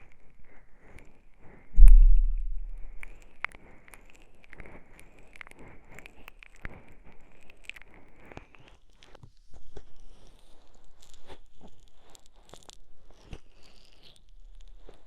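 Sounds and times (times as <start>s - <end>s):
heavy low thump: 1.8s - 3.1s.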